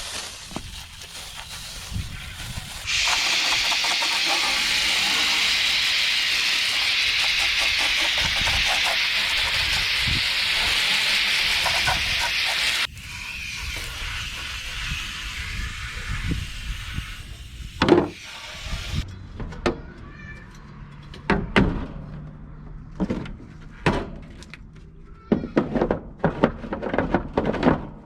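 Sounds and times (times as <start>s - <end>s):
liquid spraying from nozzle: 0.0s - 19.0s.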